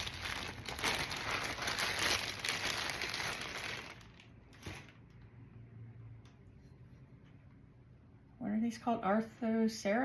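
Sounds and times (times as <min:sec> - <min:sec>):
packing wrap crinkling: 0:00.0 - 0:05.2.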